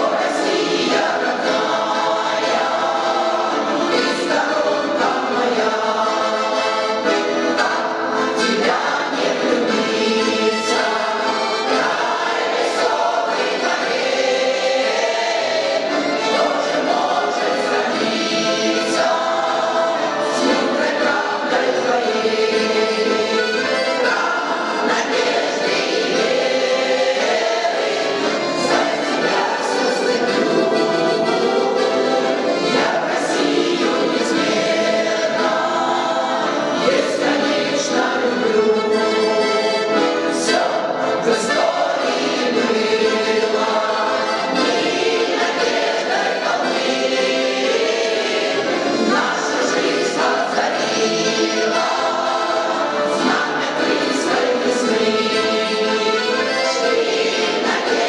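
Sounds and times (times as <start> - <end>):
choir singing: 0.0 - 58.0
instrumental accompaniment: 0.0 - 58.0.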